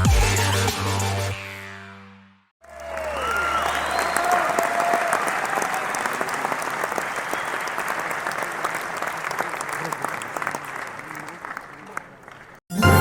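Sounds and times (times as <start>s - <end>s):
crowd applauding and cheering: 2.6s - 12.6s.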